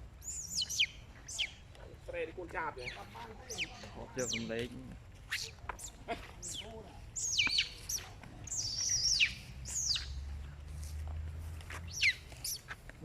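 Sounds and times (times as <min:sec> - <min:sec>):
baby monkey squealing: 0:00.2 - 0:01.6, 0:02.8 - 0:04.5, 0:05.2 - 0:10.2, 0:11.9 - 0:12.7.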